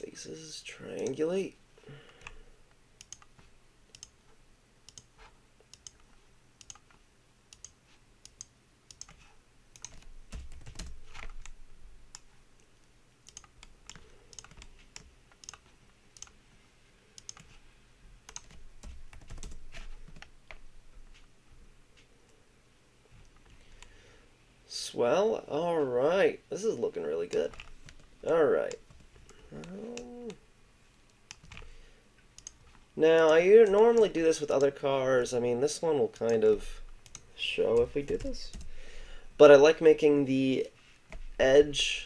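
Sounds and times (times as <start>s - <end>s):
keyboard and mouse clicking: 3.0s - 4.2s, 4.9s - 16.4s, 17.2s - 17.6s, 18.2s - 21.3s, 27.3s - 30.4s, 31.1s - 31.8s, 32.4s - 34.8s, 36.2s - 38.7s.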